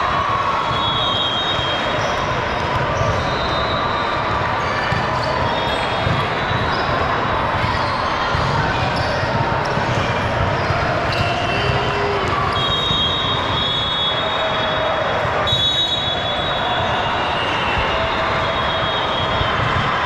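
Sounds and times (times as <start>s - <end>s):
hum of crowd voices: 0.0s - 20.0s
sneakers squeaking on floor: 0.6s - 14.3s.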